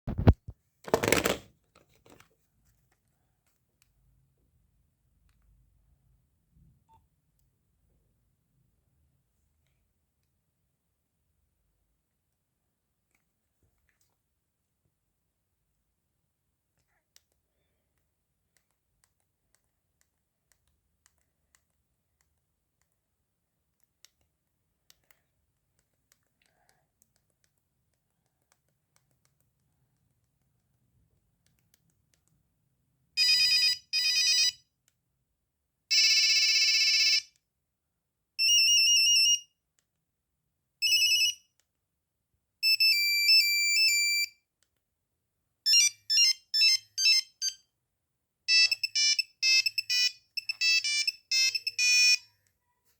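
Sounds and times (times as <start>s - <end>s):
mobile phone ringtone beeps: 33.2s - 34.6s, 35.9s - 37.2s, 38.4s - 39.4s, 40.8s - 41.4s, 42.6s - 44.3s, 45.7s - 47.6s, 48.5s - 52.3s.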